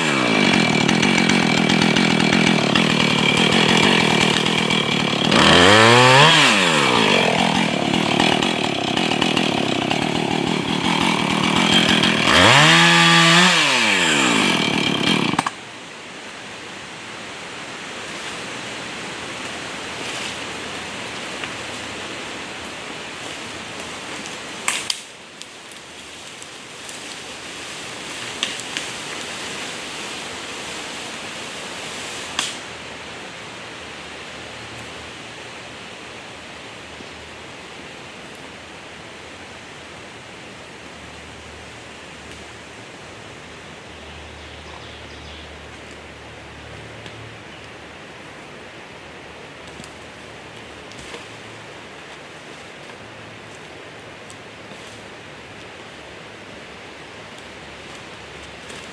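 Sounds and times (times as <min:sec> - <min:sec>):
chainsaw revving: 0:00.0 - 0:15.7.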